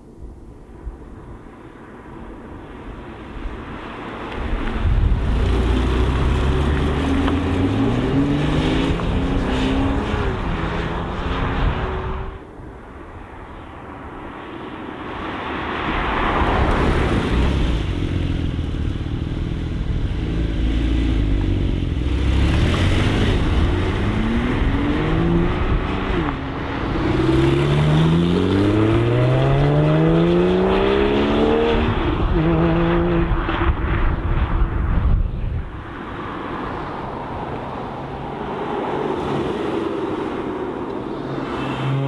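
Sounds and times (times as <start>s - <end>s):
sports car engine accelerating: 4.4s - 12.4s, 16.8s - 33.8s.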